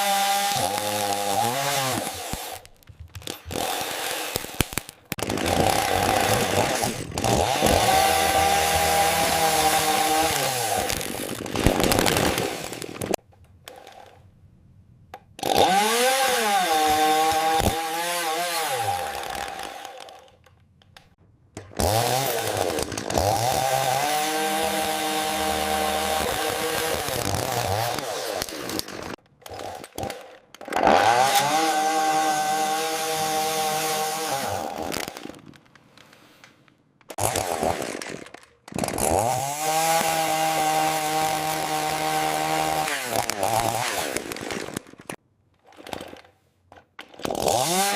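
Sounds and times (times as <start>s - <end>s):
chainsaw running at high revs: 0.0s - 2.6s, 3.4s - 4.6s, 5.2s - 13.2s, 15.4s - 20.2s, 21.8s - 28.9s, 30.8s - 35.0s, 38.8s - 44.8s, 47.3s - 47.9s.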